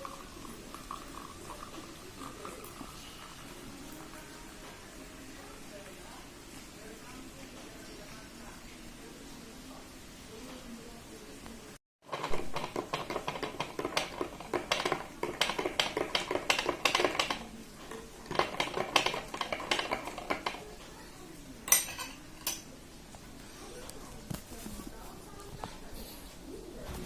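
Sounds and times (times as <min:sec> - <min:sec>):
clinking and tapping on dishes: 0:12.1 - 0:20.8, 0:21.7 - 0:22.7.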